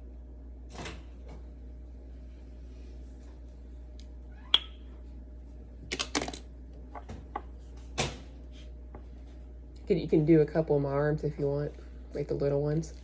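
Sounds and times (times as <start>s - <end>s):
plastic items clicking: 5.9s - 6.4s.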